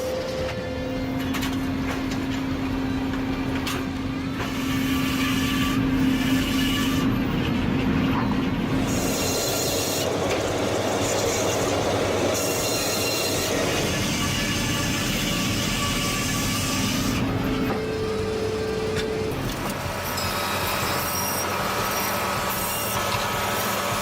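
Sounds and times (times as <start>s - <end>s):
saw cutting wood: 0.0s - 24.0s
sawmill machine hum: 0.0s - 24.0s.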